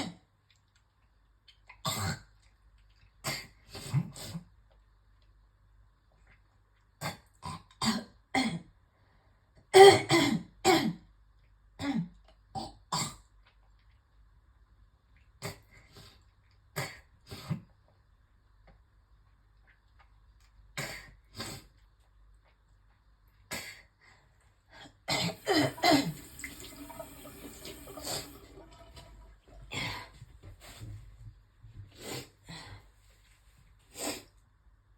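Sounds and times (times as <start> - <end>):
woman coughing and gagging: 9.8 - 11.0, 25.1 - 26.2.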